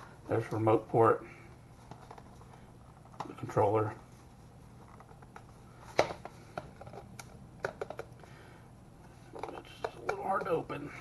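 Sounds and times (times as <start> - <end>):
plastic clicks and taps: 5.0 - 8.2.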